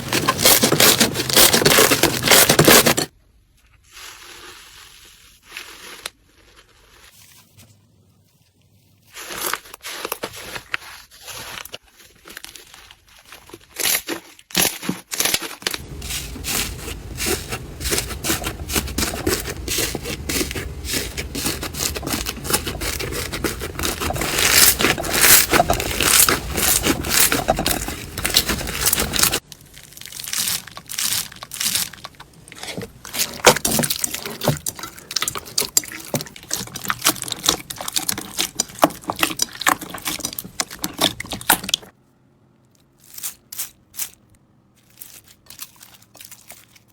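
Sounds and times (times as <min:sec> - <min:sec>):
slime crackling and popping: 0:13.7 - 0:41.9.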